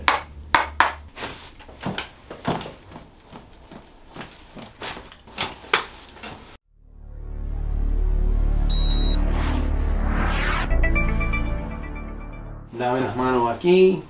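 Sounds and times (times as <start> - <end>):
joints cracking: 0.0 - 6.6.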